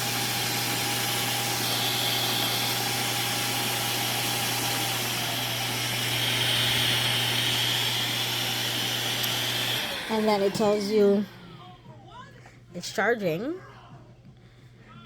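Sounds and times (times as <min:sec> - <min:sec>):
suction motor humming: 0:00.0 - 0:11.5.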